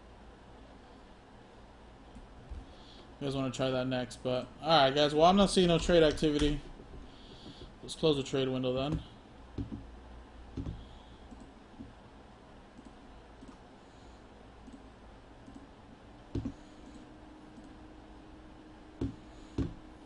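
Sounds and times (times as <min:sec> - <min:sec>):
faint steady hum: 0:00.0 - 0:20.0
computer mouse clicking: 0:10.6 - 0:11.9, 0:12.8 - 0:13.6, 0:14.6 - 0:14.8, 0:15.4 - 0:15.7.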